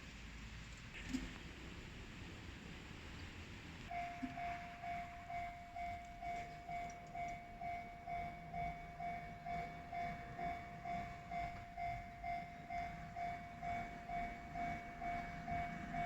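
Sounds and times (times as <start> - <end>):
level crossing warning bell ringing: 3.9 - 16.0.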